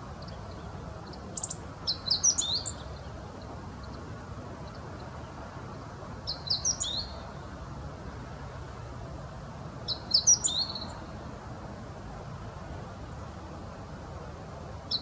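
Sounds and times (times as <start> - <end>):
bird chirping song: 0.1 - 7.4, 9.8 - 11.1.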